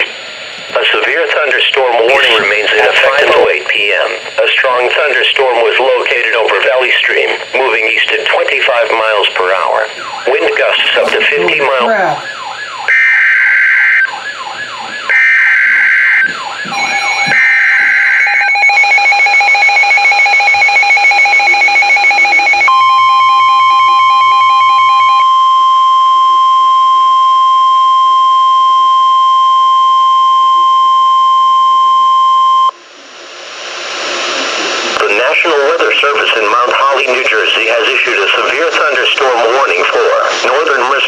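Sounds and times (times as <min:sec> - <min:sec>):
steady single-pitch alarm tone: 0:09.5 - 0:32.9
warbling siren-like tone: 0:10.0 - 0:27.1.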